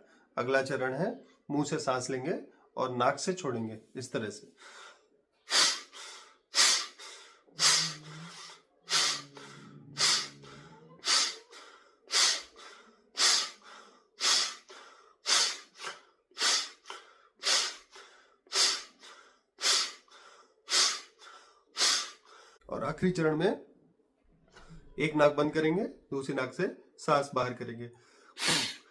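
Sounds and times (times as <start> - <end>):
breaths in through mouth: 4.6 - 22.6
forceful nasal exhalations: 4.6 - 22.6, 28.2 - 28.9.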